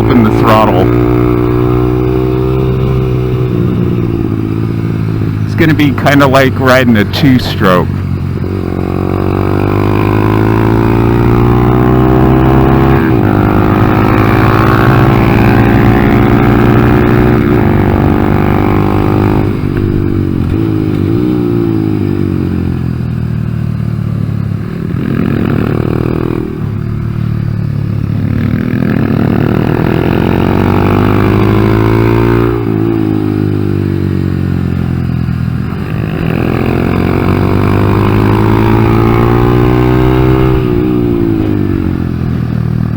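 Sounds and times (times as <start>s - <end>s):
motorcycle engine revving: 0.0s - 42.9s.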